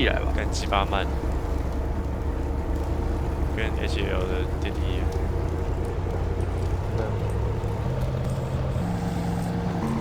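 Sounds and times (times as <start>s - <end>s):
elevator rumble and hum: 0.0s - 10.0s
elevator motor tone: 0.8s - 10.0s.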